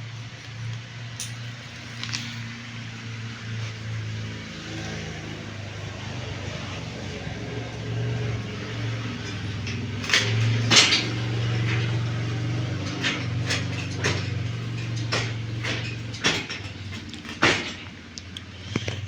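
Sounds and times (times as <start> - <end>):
hard objects knocking and clacking: 9.3 - 19.0.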